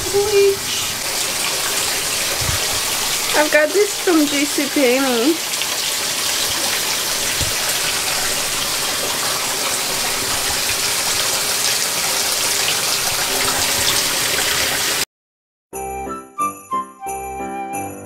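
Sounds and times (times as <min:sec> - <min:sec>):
water gushing into washing machine: 0:00.0 - 0:15.0
jingling music: 0:15.8 - 0:18.0.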